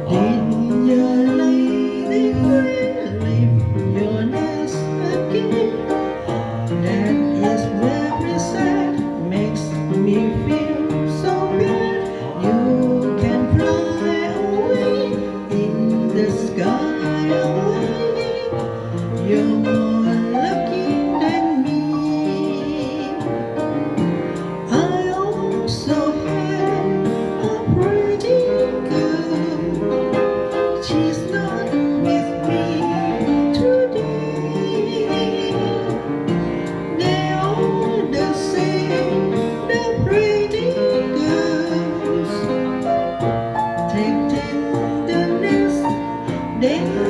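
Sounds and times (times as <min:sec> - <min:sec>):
woman singing: 0:00.0 - 0:23.6, 0:24.7 - 0:30.0, 0:30.6 - 0:36.1, 0:37.0 - 0:42.7, 0:43.9 - 0:47.0
keyboard accompaniment: 0:00.0 - 0:47.0.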